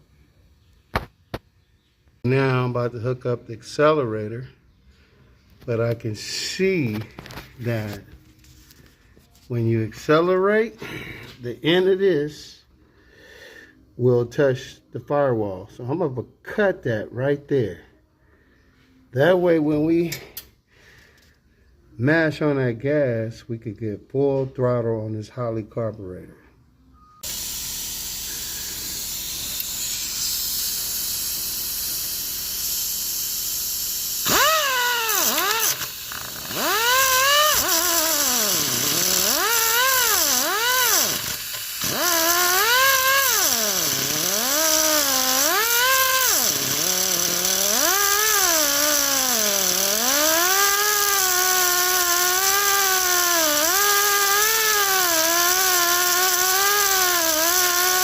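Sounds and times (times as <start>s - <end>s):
cut-off tool whining: 27.2s - 58.0s
air hiss: 27.3s - 58.0s.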